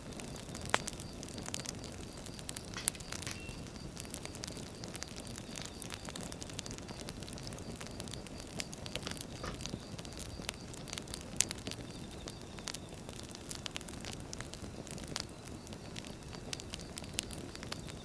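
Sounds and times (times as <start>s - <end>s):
firewood crackling and popping: 0.0s - 18.0s
low steady fire rumble: 0.0s - 18.0s.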